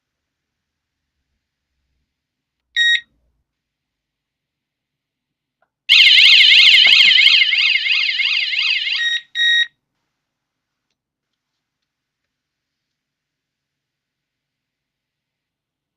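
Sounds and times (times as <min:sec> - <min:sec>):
electronic alarm siren warbling: 0:05.9 - 0:09.2.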